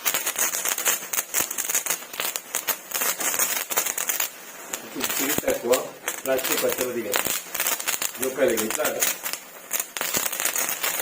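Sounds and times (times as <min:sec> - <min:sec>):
fire crackling and popping: 0:00.0 - 0:11.0
steady hiss: 0:00.0 - 0:11.0.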